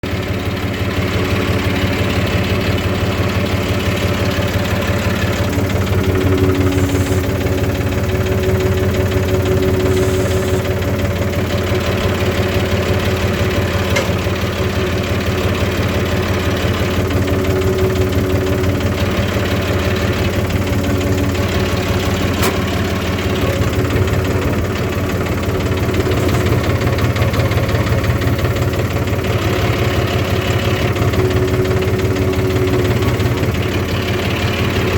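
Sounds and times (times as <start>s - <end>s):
farm machine engine idling: 0.0s - 34.9s.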